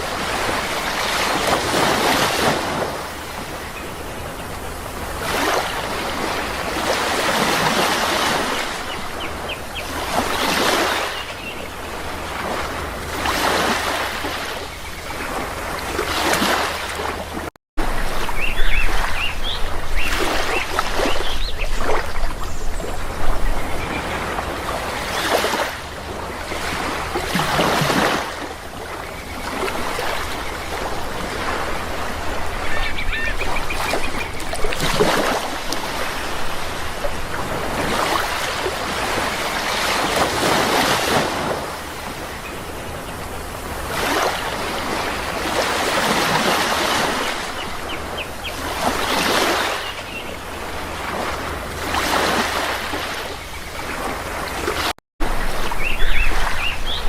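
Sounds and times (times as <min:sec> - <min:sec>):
sea waves washing ashore: 0:00.0 - 0:57.0.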